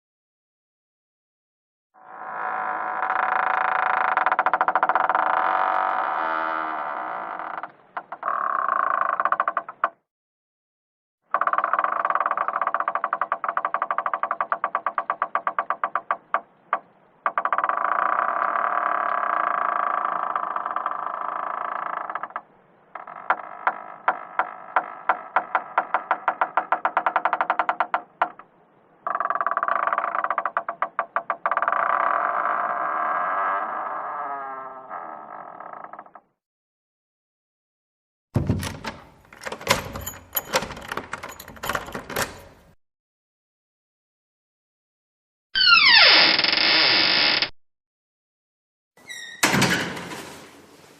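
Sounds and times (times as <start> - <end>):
door hinge creaking: 2.0 - 10.1, 11.3 - 36.4, 38.4 - 42.8, 45.6 - 47.5, 49.0 - 50.3
door clicks: 38.4 - 42.8.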